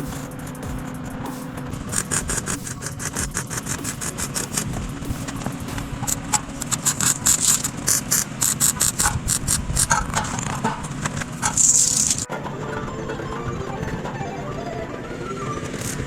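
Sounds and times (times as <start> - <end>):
steady low hum: 0.0 - 12.3.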